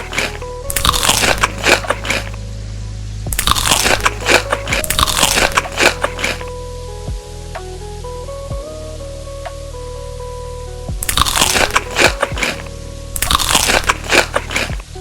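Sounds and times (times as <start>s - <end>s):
crunching crisp food: 0.0s - 2.4s, 3.4s - 6.5s, 11.0s - 12.6s, 13.2s - 14.8s
simple background melody: 0.0s - 15.0s.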